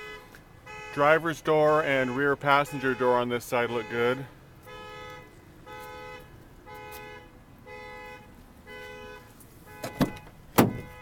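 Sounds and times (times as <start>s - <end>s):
car warning chime: 7.7s - 11.0s.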